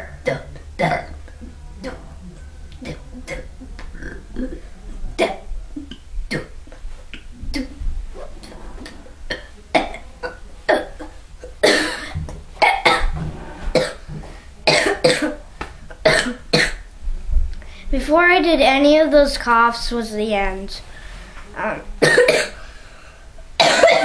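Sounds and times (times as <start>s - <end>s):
person coughing: 22.0s - 22.6s, 23.6s - 24.0s.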